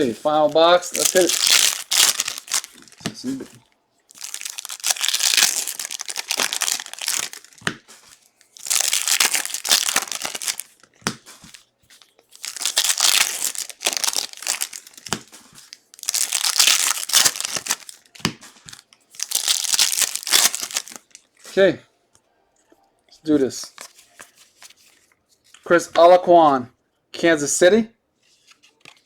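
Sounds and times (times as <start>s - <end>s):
plastic wrapping crinkling: 0.0s - 21.4s.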